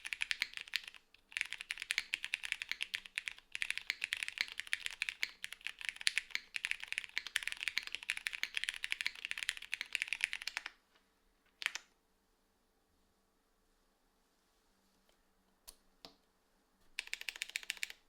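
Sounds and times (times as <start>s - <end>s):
keyboard typing clacks: 0.0s - 10.7s, 17.0s - 18.0s.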